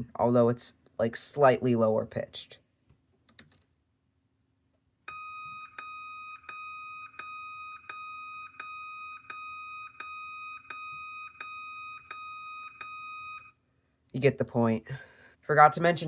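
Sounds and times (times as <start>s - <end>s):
alarm clicks: 5.1s - 13.6s.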